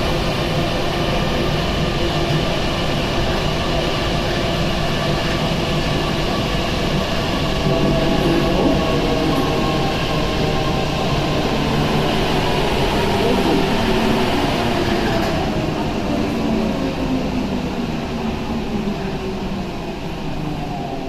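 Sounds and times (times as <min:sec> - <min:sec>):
subway train running noise: 0:00.0 - 0:21.0.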